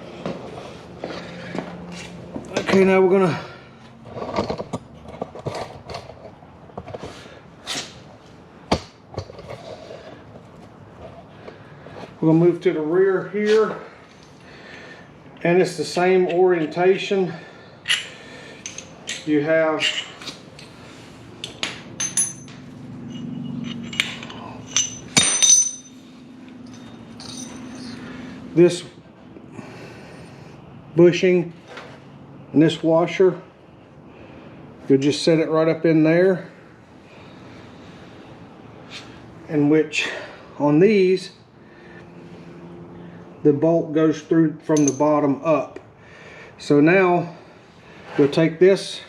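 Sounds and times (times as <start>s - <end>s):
tools and parts clattering: 4.0s - 7.1s, 9.1s - 11.2s, 17.9s - 20.8s, 21.4s - 28.3s, 44.6s - 45.2s
low steady hum: 13.8s - 31.1s
metal hardware clinking: 17.9s - 19.3s, 21.4s - 28.1s, 44.7s - 45.2s.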